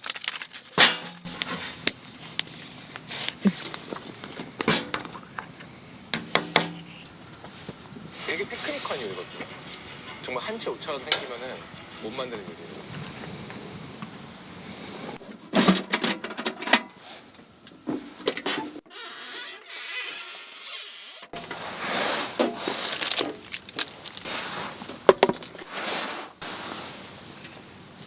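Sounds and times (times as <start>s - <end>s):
hands handling cooking gear: 0.0s - 8.2s, 21.4s - 27.8s.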